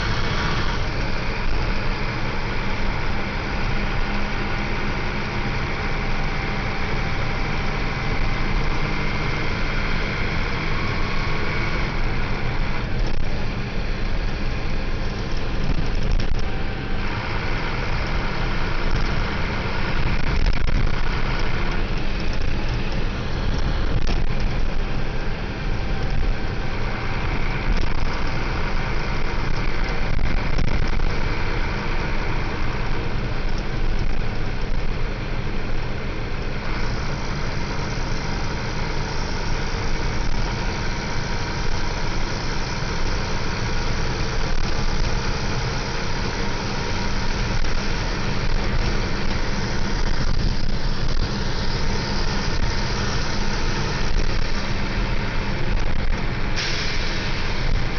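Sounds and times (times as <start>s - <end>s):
bus diesel engine running: 0.0s - 57.9s
high hiss: 56.5s - 57.9s.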